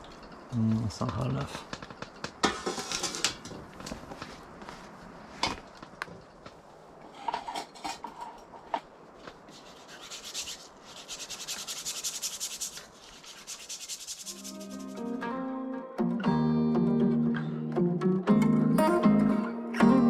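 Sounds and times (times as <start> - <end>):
light clinks: 0.0 - 2.4
brush scrubbing a cup: 9.4 - 15.0.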